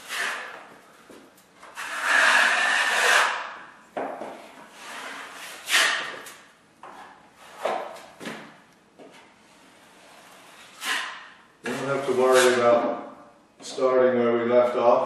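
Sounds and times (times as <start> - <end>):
drywall knife scraping: 0.0 - 0.7, 1.6 - 3.7, 4.7 - 6.4, 9.9 - 12.8.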